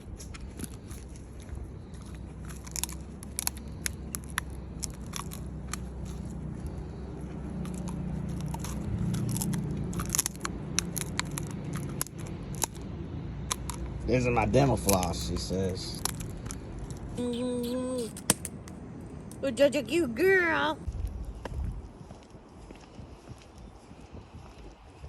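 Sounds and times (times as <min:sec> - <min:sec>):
dog chewing and crunching: 0:00.0 - 0:17.2
low rumble: 0:20.7 - 0:25.0.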